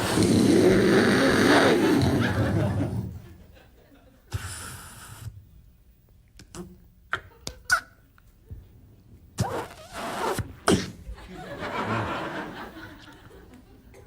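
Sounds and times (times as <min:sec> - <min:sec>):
man making mouth sound effects: 0:00.0 - 0:03.1, 0:06.4 - 0:08.0, 0:09.4 - 0:11.0
audience laughter: 0:01.5 - 0:04.3, 0:11.1 - 0:14.0.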